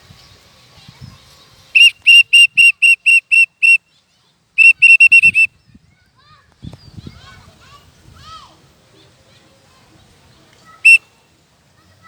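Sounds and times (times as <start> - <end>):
whistle toots: 1.8 - 3.8, 4.6 - 5.6, 10.8 - 11.1.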